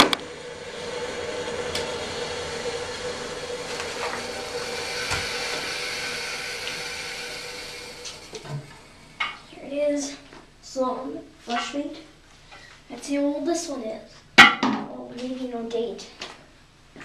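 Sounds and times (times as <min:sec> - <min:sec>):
toilet flushing: 0:00.0 - 0:10.3.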